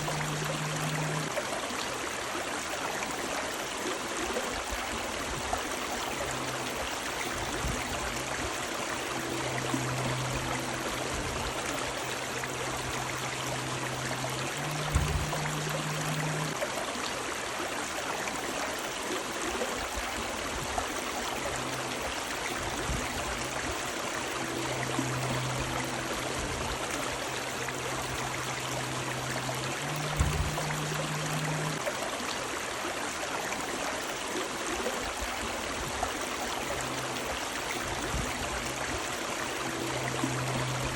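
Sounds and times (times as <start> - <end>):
faint low hum: 0.0 - 1.4, 5.6 - 16.6, 21.0 - 31.9
river water rushing: 0.0 - 40.9
dull low thump: 14.7 - 16.2, 30.0 - 31.5.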